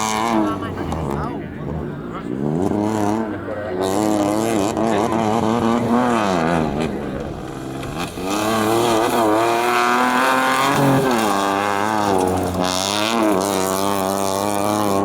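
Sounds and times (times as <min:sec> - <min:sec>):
engine revving at high revs: 0:00.0 - 0:15.0.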